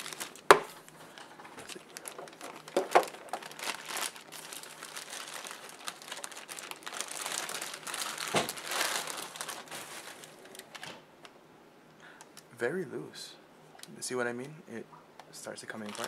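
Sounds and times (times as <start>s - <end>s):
plastic packaging crinkling: 0.0s - 11.0s, 15.6s - 16.0s.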